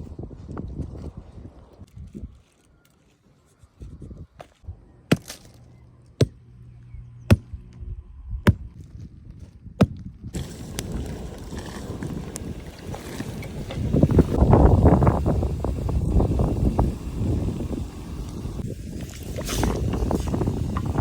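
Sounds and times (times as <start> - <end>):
sharp chopping strikes: 5.1 - 5.6, 8.4 - 8.8.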